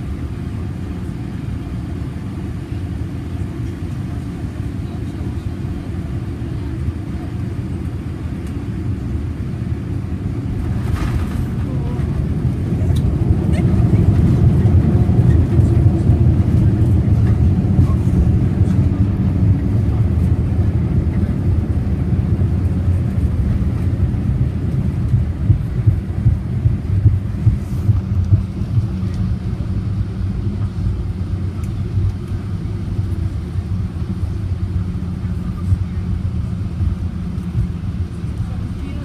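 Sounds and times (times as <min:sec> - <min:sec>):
aircraft cabin rumble: 0:00.0 - 0:39.0.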